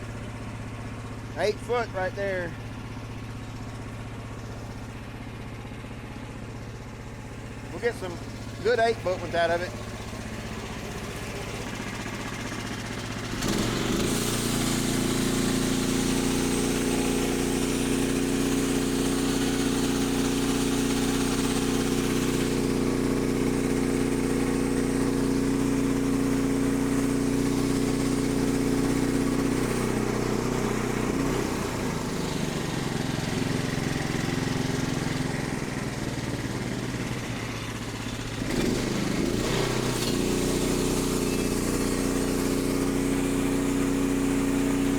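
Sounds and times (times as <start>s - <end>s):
sawmill engine revving: 0.0s - 5.0s, 7.3s - 44.9s
saw blade cutting log: 7.8s - 9.8s, 13.3s - 22.6s, 38.5s - 44.9s.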